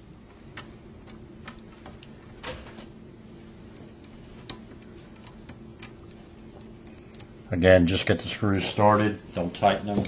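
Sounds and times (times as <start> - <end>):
light clicks and taps: 3.4 - 7.4.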